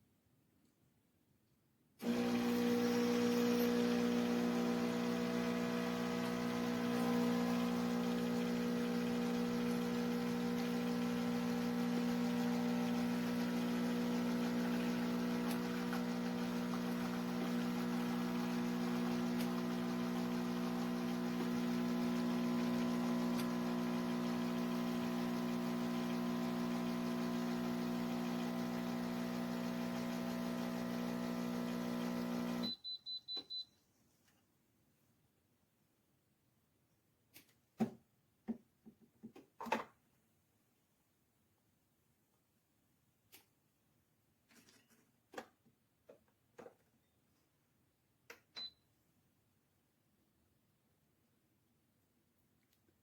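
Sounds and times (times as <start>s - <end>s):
espresso machine humming: 2.0s - 32.7s.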